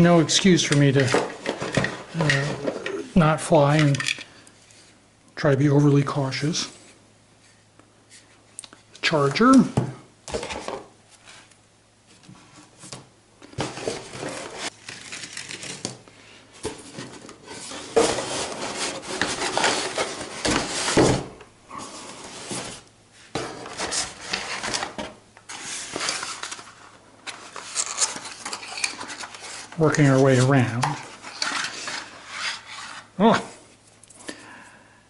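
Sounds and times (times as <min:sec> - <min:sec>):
parts knocking and clattering: 0:00.7 - 0:02.9
packaging rustling: 0:13.6 - 0:21.1, 0:23.6 - 0:32.6.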